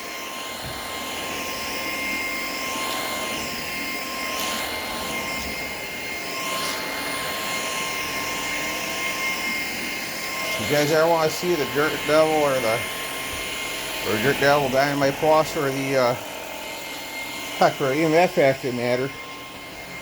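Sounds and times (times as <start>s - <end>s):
vacuum cleaner running: 0.0s - 20.0s.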